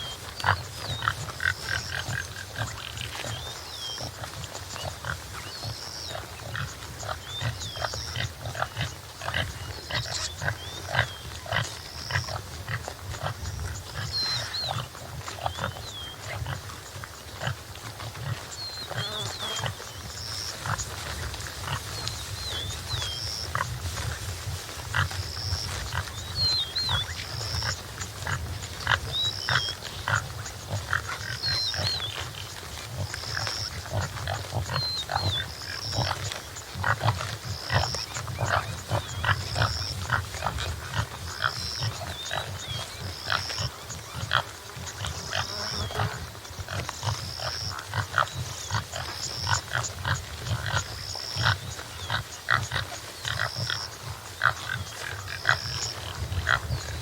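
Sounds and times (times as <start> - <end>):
continuous low rumble: 0.0 - 57.0
antelope calling: 18.3 - 32.3, 33.0 - 57.0.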